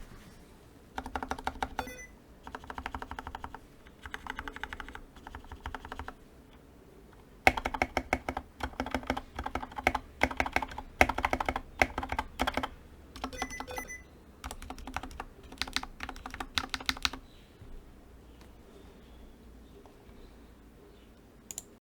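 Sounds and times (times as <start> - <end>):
mechanical keyboard typing: 1.0 - 6.2, 7.4 - 17.2
brief electronic beep: 1.8 - 2.1, 13.3 - 14.1.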